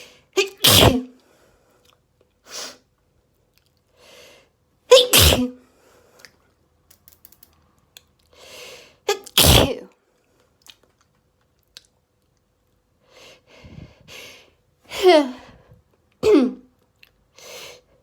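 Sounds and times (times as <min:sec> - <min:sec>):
person sneezing: 0:00.4 - 0:01.1, 0:04.9 - 0:05.6, 0:09.1 - 0:09.8, 0:16.2 - 0:16.7.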